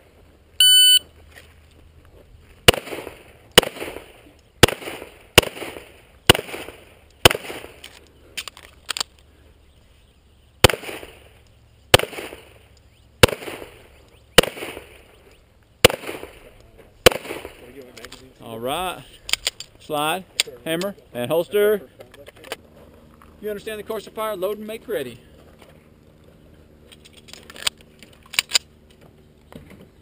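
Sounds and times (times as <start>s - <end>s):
shot timer beep: 0.6s - 1.0s
pistol shots with echo: 2.7s - 7.8s, 10.6s - 11.2s, 11.9s - 12.5s, 13.2s - 13.8s, 14.4s - 14.9s, 15.8s - 16.4s, 17.0s - 17.6s.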